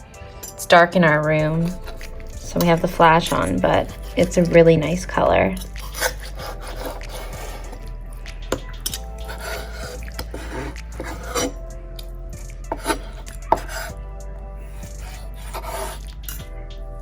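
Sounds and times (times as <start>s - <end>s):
faint music: 0.0s - 17.0s
knife slicing steak: 5.6s - 7.9s, 9.2s - 11.5s.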